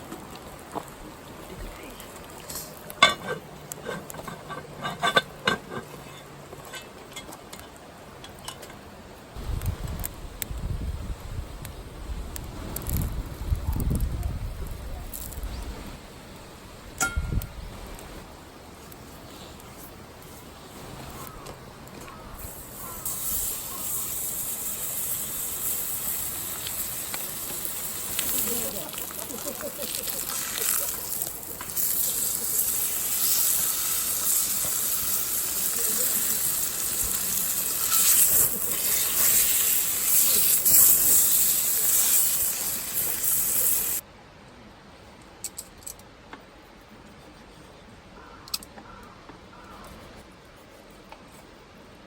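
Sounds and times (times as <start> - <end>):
steady hiss: 8.8 - 44.1
wind buffeting microphone: 9.4 - 16.1.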